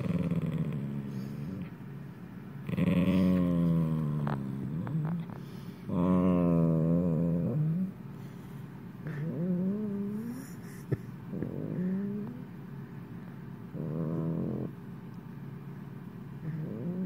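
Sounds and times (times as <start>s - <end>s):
dog snoring: 2.6s - 7.9s, 9.0s - 12.4s, 13.7s - 14.8s, 16.4s - 17.0s.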